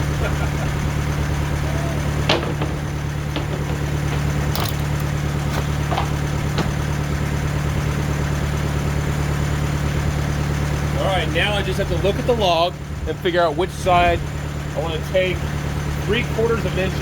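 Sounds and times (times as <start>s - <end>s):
diesel engine idling: 0.0s - 17.0s
sharp knocks and clicks: 2.2s - 7.0s.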